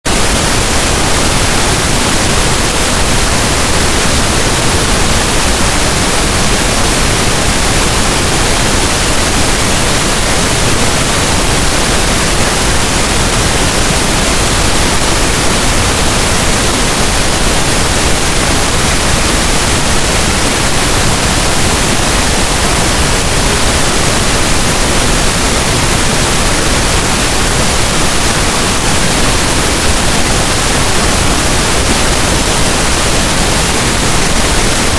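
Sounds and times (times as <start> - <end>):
pink noise hiss: 0.1 - 34.9.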